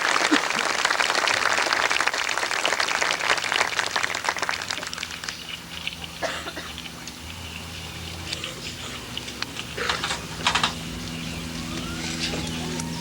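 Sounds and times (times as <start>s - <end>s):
audience applauding: 0.0s - 5.4s.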